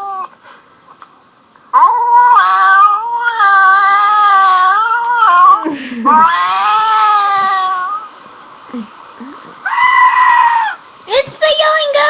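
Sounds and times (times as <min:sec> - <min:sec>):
goat screaming: 0:01.8 - 0:08.1, 0:09.6 - 0:10.8.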